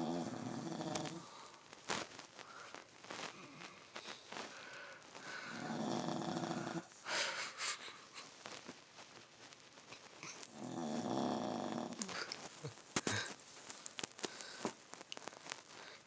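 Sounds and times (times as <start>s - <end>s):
dog snoring: 0.0s - 1.3s, 5.3s - 6.9s, 10.2s - 12.3s.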